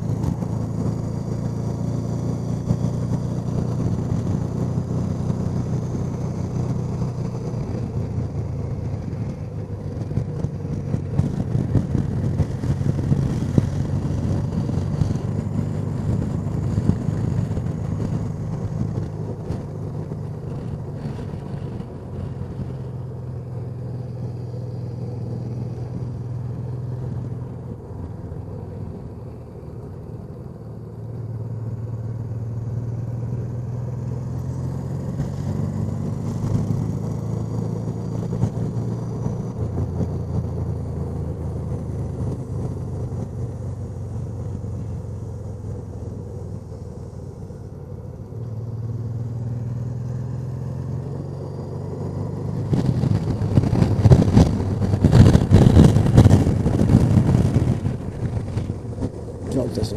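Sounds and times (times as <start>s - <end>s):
motorcycle engine running: 0.0s - 59.9s
wind noise on microphone: 7.6s - 22.9s, 52.0s - 59.9s.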